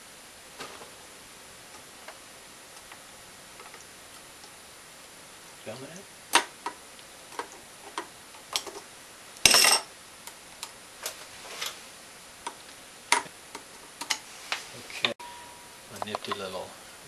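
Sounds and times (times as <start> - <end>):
metal parts clicking and clinking: 9.4 - 9.9
ringing metallic clink: 15.2 - 16.2.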